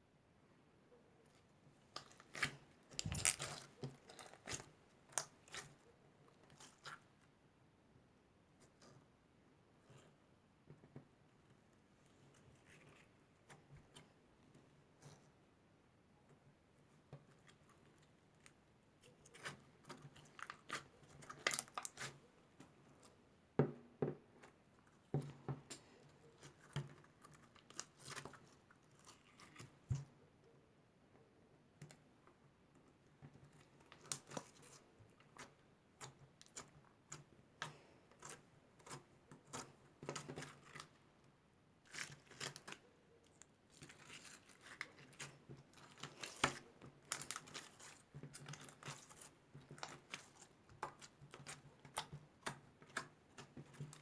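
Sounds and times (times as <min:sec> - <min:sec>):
slime clicking and crackling: 0:02.0 - 0:05.7.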